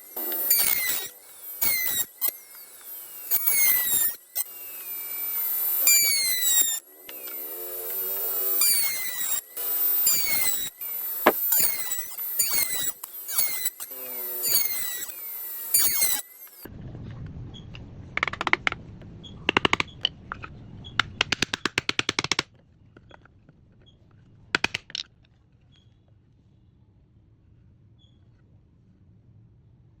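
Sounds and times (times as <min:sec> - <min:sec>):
rapid mechanical clicking: 0:18.2 - 0:18.8, 0:19.5 - 0:22.5.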